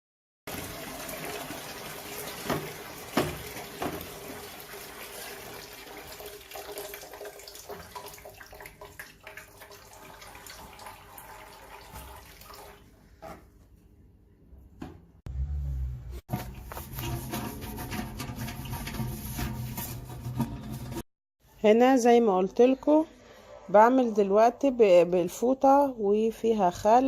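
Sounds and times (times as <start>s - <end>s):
tap water running into basin: 0.5s - 12.9s.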